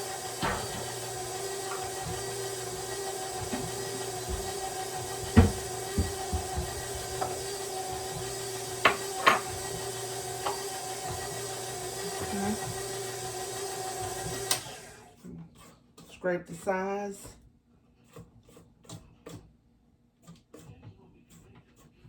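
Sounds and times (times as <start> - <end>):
electric stand mixer running: 0.0 - 15.2
kitchen things knocking and clattering: 0.3 - 11.4.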